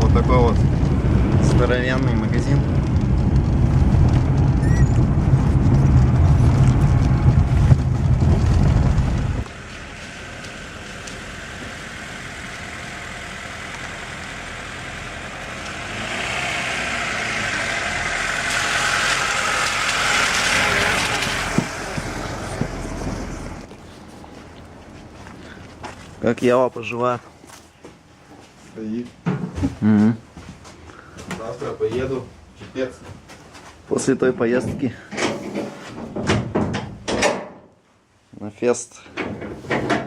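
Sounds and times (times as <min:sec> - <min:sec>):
car road and engine rumble: 0:00.0 - 0:26.6.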